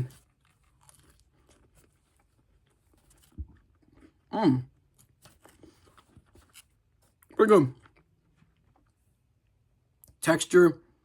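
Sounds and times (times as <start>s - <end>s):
pastry crunching while chewing: 0.0s - 9.0s.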